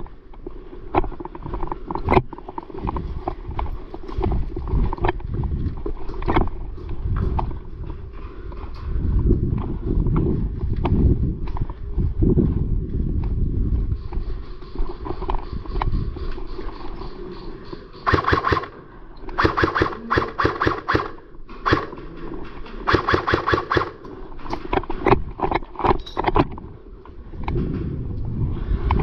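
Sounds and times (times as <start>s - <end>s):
airsoft rifle rapid shots: 18.0s - 18.8s, 19.4s - 22.0s, 22.9s - 24.0s.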